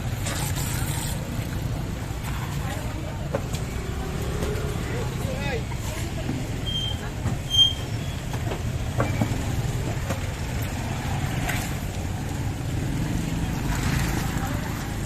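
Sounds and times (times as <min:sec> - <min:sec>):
vehicle engine rumbling: 0:00.0 - 0:15.0
high squeak: 0:06.6 - 0:08.2.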